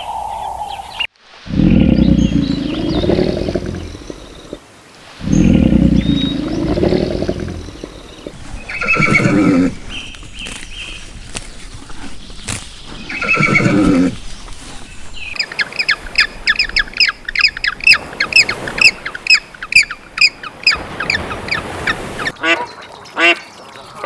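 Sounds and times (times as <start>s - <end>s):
large farm animal calling: 5.2s - 22.3s.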